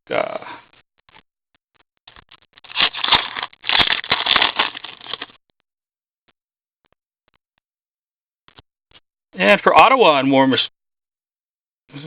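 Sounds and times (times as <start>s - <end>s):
cards and packaging rustling: 2.1s - 5.4s.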